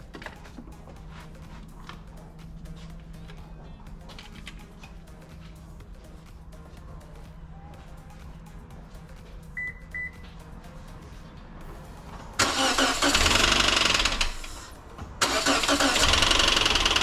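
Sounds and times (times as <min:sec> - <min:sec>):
short high beeps: 0:09.6 - 0:10.2
car engine knocking: 0:11.6 - 0:17.0.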